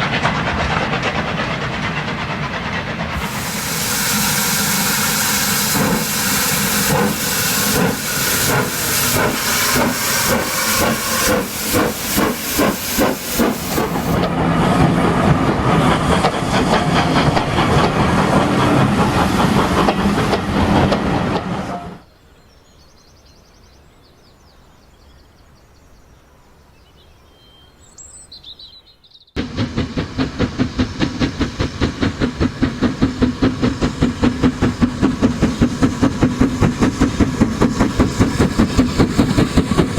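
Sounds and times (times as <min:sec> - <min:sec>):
steam hiss: 0:00.0 - 0:14.4, 0:29.4 - 0:39.9
model steam locomotive chuffing: 0:00.0 - 0:22.0, 0:29.4 - 0:39.9.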